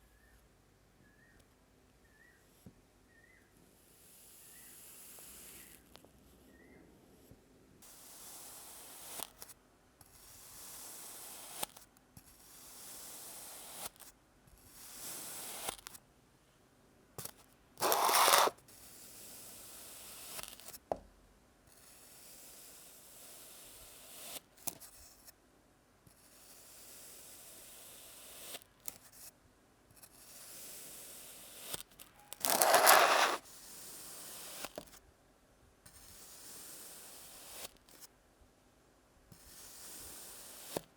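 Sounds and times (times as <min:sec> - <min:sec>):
blade slicing through sand: 0:17.8 - 0:18.5, 0:32.4 - 0:33.4.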